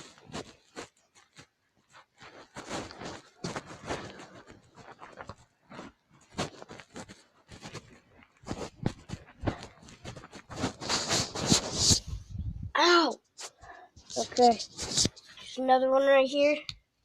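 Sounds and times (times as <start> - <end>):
footsteps walking: 0.0 - 12.3.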